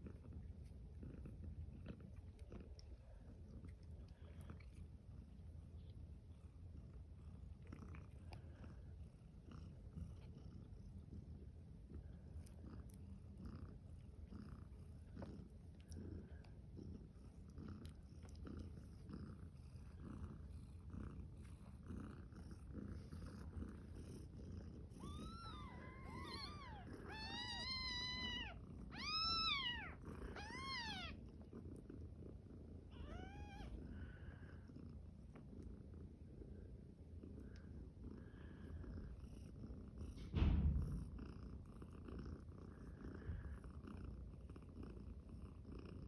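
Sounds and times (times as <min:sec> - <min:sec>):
cat purring: 0:00.0 - 0:46.0
kitten mewing: 0:25.0 - 0:31.2, 0:32.9 - 0:33.8.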